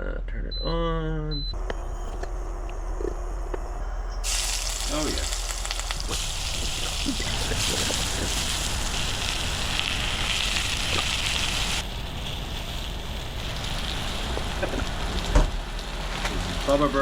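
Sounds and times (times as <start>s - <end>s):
vegetables sizzling in a frying pan: 4.2s - 17.0s.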